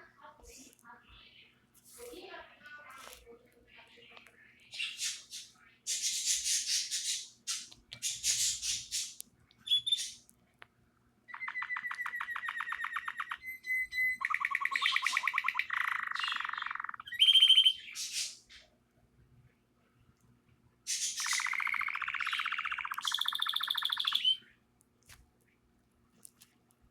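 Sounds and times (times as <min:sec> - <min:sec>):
canary singing trills: 0:03.9 - 0:10.3, 0:11.3 - 0:18.7, 0:20.9 - 0:24.6.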